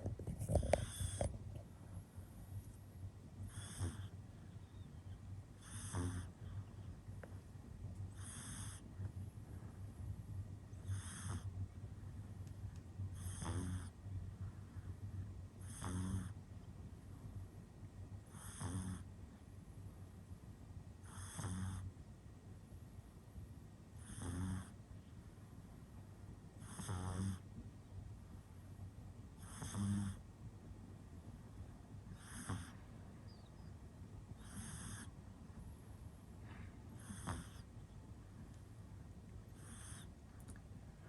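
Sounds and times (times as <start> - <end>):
puppy snoring with squeaky whistle: 0.4 - 1.4, 3.4 - 6.4, 8.1 - 8.8, 10.8 - 11.6, 13.2 - 14.0, 15.6 - 16.4, 18.3 - 19.1, 21.0 - 21.9, 24.0 - 24.8, 26.6 - 27.4, 29.4 - 30.2, 32.1 - 33.7, 34.4 - 35.2, 37.0 - 37.7, 39.6 - 40.1.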